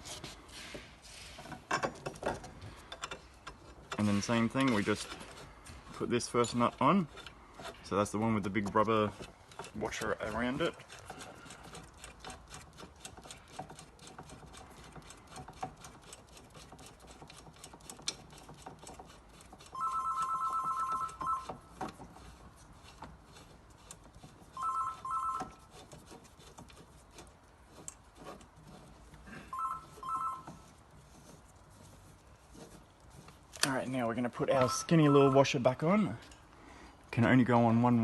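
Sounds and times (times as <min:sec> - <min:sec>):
telephone ringing: 0:19.8 - 0:21.6, 0:24.6 - 0:25.6, 0:29.5 - 0:30.6, 0:34.5 - 0:35.7.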